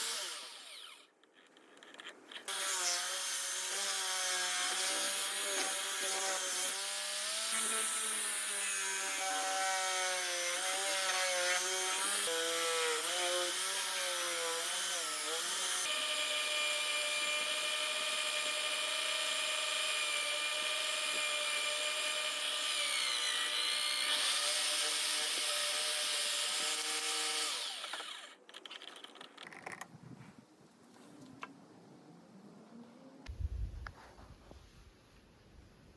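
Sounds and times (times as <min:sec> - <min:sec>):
electric drill motor whine: 0:00.0 - 0:01.0, 0:17.4 - 0:28.4.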